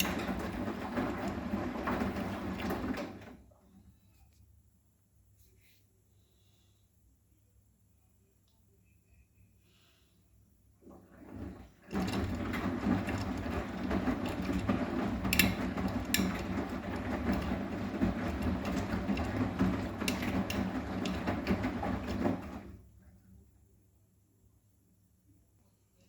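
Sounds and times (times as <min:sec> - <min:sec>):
washing machine drum tumbling laundry: 0:00.0 - 0:03.6, 0:10.8 - 0:23.0.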